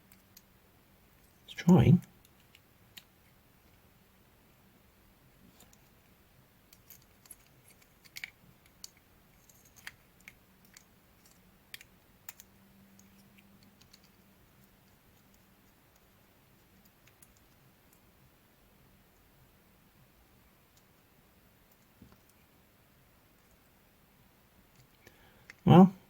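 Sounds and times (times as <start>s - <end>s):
faint clicks and taps of model parts: 0.0s - 0.6s, 2.0s - 3.8s, 5.5s - 18.1s, 21.7s - 22.5s, 24.7s - 25.6s.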